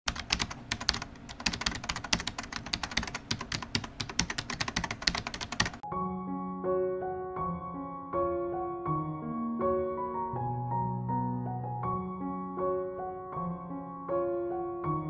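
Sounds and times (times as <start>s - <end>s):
computer keyboard typing: 0.1s - 5.8s
soft piano music: 0.1s - 15.0s.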